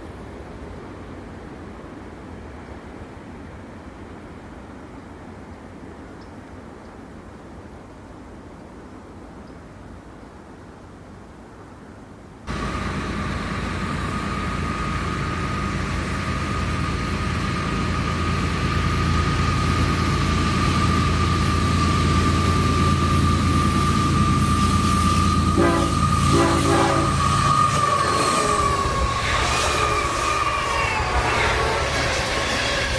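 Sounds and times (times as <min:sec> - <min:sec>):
train engine low rumble: 0:00.0 - 0:32.9
high-pitched squeal: 0:12.5 - 0:32.9
train horn notes: 0:25.4 - 0:28.3.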